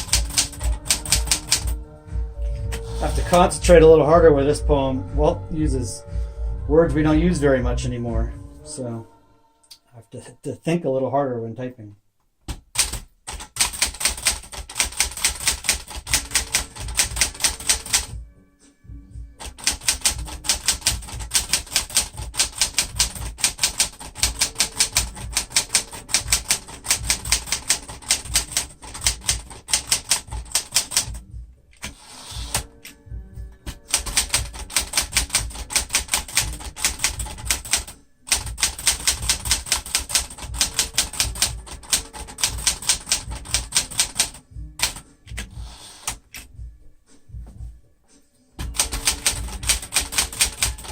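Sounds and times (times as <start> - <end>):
manual typewriter typing: 0.0 - 1.8, 12.6 - 18.2, 19.4 - 31.2, 31.8 - 32.7, 33.7 - 46.4, 48.6 - 50.9.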